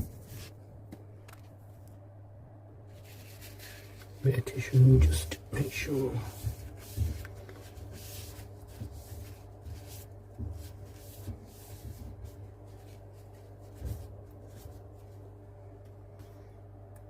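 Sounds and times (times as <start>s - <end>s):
low electrical hum: 0.0s - 17.0s
scratchy rubbing on copper pipe: 3.0s - 15.2s.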